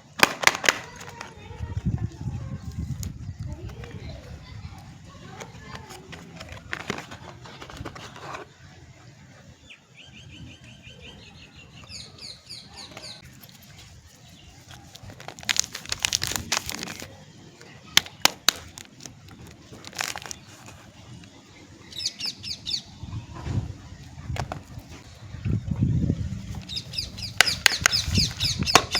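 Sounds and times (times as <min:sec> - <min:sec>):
paper packaging rustling: 0:00.2 - 0:08.5, 0:13.2 - 0:21.0, 0:26.5 - 0:28.9
birds chirping: 0:07.2 - 0:15.0, 0:18.8 - 0:28.9.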